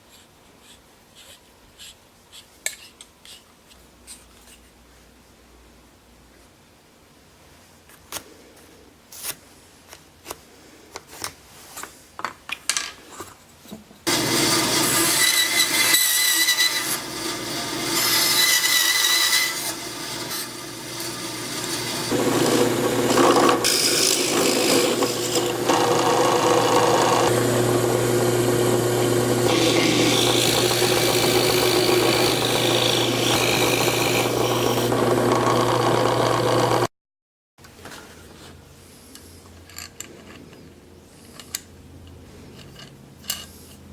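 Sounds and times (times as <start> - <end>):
power tool cutting into wood: 14.1 - 36.9.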